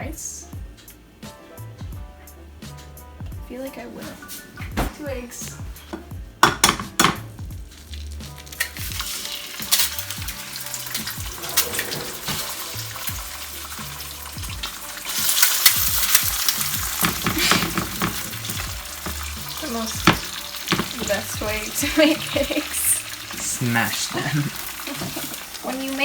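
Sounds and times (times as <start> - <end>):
eggs sizzling in a frying pan: 6.1 - 26.0.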